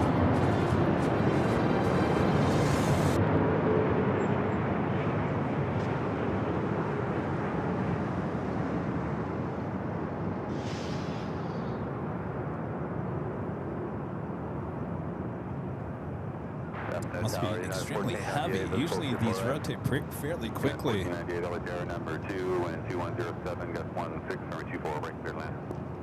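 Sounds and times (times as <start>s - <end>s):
jet engines roaring: 16.8s - 26.0s.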